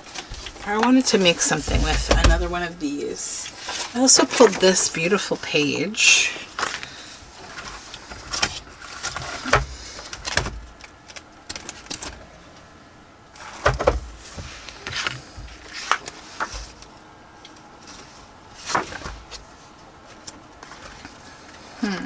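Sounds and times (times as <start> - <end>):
paper rustling and sliding: 13.4 - 16.9, 17.8 - 21.7.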